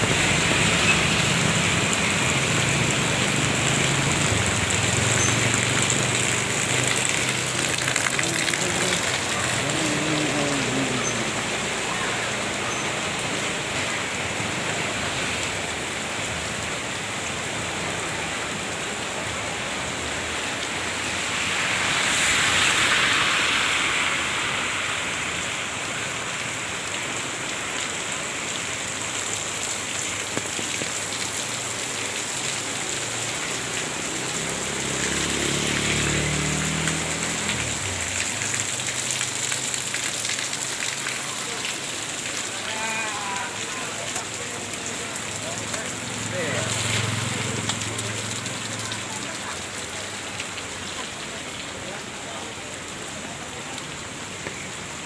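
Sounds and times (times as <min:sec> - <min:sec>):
rain splashing on surfaces: 0:00.0 - 0:55.0
vehicle passing: 0:20.8 - 0:25.4, 0:33.6 - 0:37.8, 0:45.9 - 0:49.3.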